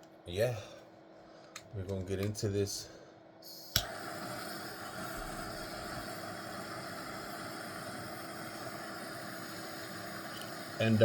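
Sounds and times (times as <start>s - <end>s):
faint constant hum: 0.0s - 11.0s
steady background hiss: 1.6s - 11.0s.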